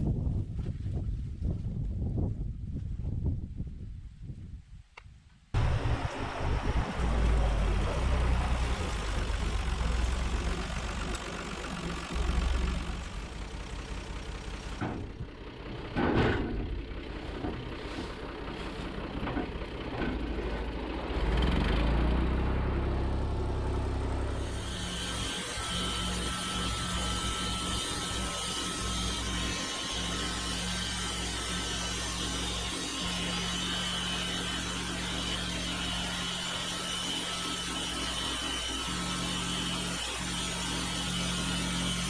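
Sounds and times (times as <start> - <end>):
high whine: 5.6 - 15.3
machinery low rumble: 5.6 - 36.3.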